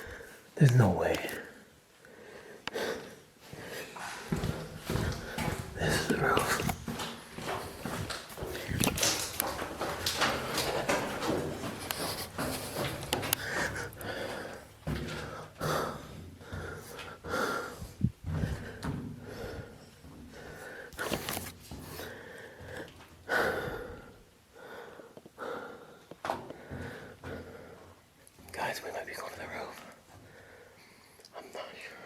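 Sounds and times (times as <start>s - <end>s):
person breathing heavily: 0.0s - 0.6s, 2.0s - 28.0s, 30.2s - 31.2s
knocks and footfalls: 3.5s - 16.9s.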